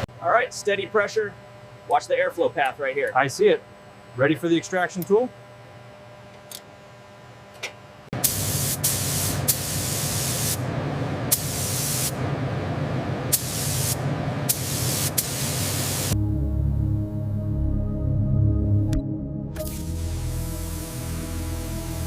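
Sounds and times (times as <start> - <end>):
high-pressure spray hissing: 8.2 - 10.6, 11.3 - 12.2, 13.3 - 16.2, 19.6 - 22.0.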